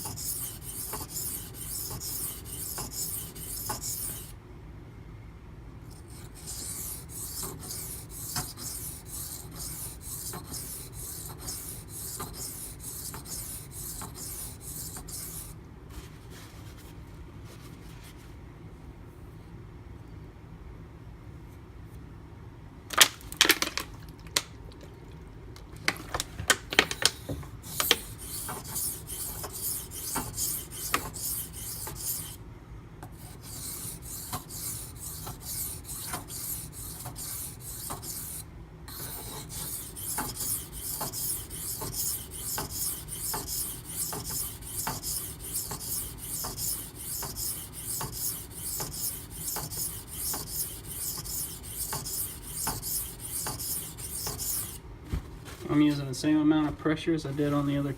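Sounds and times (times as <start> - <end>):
knife scraping on whetstone: 0.0 - 4.3, 6.0 - 15.5, 27.7 - 32.4, 33.2 - 54.8.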